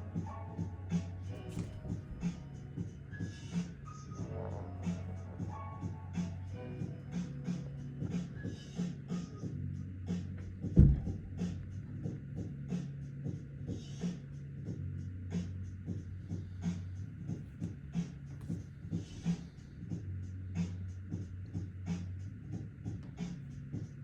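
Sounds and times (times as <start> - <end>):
lo-fi hip-hop music: 0.0 - 24.0
loud thump: 1.4 - 2.6, 10.6 - 11.6.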